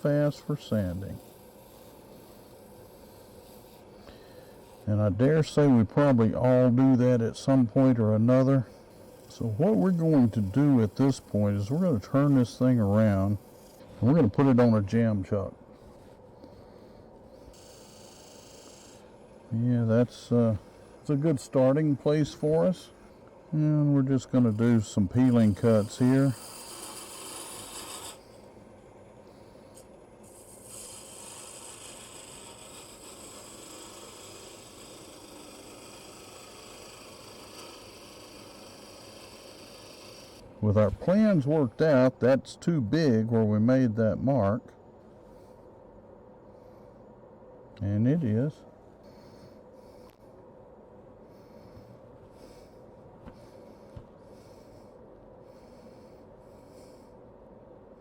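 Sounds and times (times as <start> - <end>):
hiss of lathe tool cutting wood: 0.0 - 5.0, 8.8 - 13.8, 17.5 - 19.1, 24.1 - 28.3, 29.8 - 40.4
lathe low hum: 0.0 - 43.5.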